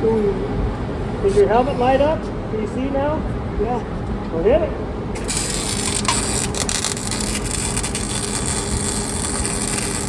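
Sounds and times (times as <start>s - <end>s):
welding arc crackling: 5.2s - 10.0s.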